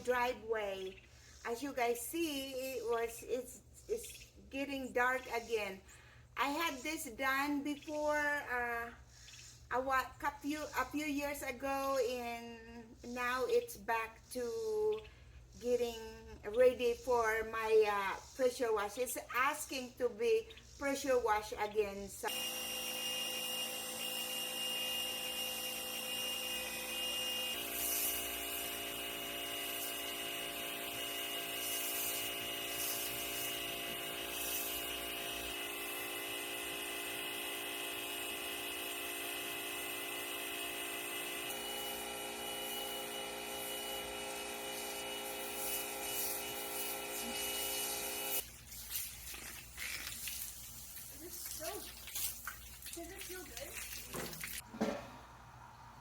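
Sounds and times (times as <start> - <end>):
pressure washer motor whine: 22.3 - 48.4.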